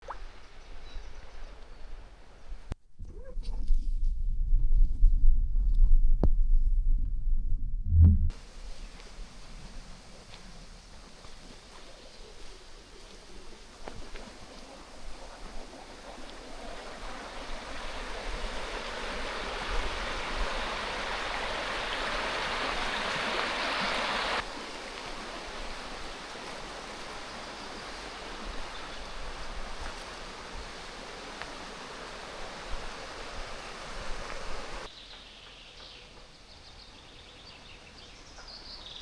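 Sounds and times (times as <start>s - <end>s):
waterfall rushing: 14.3s - 34.9s.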